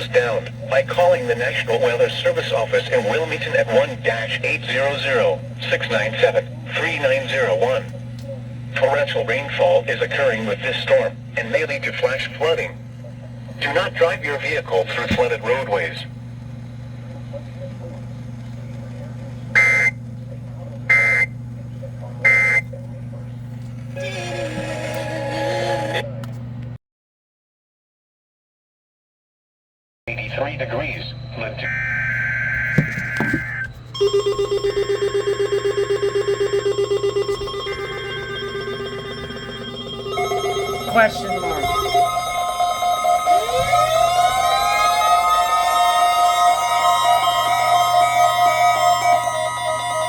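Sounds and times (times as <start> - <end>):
steady low hum: 0.0 - 26.7, 30.1 - 50.0
pulsing electronic alarm: 19.5 - 20.0, 20.9 - 21.4, 22.2 - 22.7, 31.3 - 50.0
high steady tone: 19.6 - 20.0, 31.6 - 50.0.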